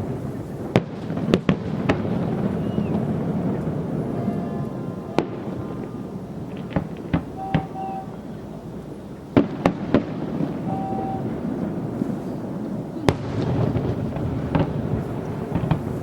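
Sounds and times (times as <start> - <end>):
fireworks bangs: 0.0 - 16.0
short steady tone: 10.7 - 11.2.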